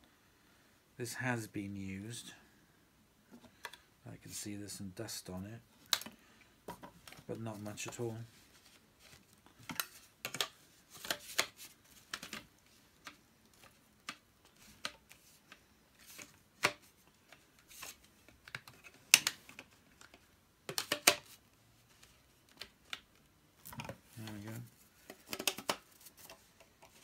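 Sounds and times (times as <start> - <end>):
plastic parts clicking and tapping: 3.3 - 3.8, 5.8 - 8.0, 9.5 - 21.3, 22.5 - 27.0.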